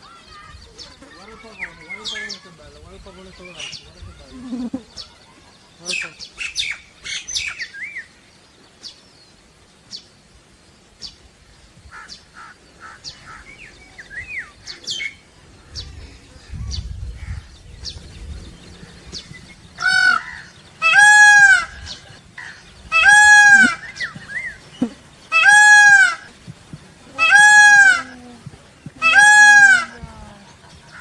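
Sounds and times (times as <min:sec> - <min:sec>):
peacock calling: 0:00.0 - 0:08.2, 0:11.9 - 0:16.5, 0:18.7 - 0:31.0
small birds chirping: 0:00.0 - 0:31.0.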